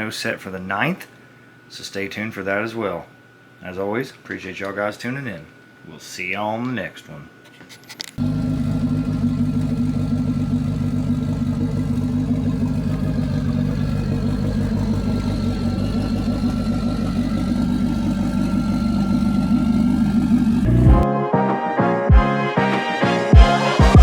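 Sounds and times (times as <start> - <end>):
car engine idling: 8.2 - 21.0.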